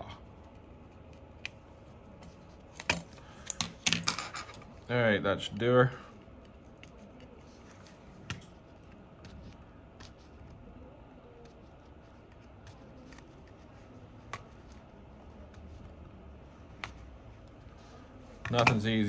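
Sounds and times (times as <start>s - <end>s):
small parts and tools clicking: 2.7s - 4.8s.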